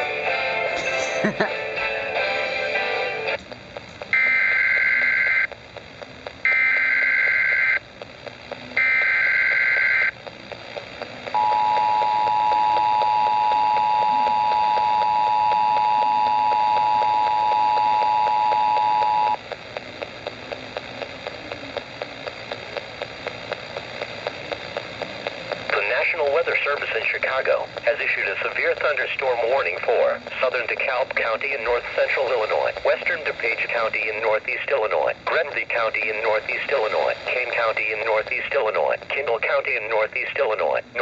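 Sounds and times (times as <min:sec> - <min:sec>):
faint crackling static: 0:00.0 - 0:41.0
harsh buzzing data bursts: 0:00.0 - 0:41.0
radio music: 0:00.0 - 0:41.0
two-tone attention signal: 0:11.4 - 0:19.4.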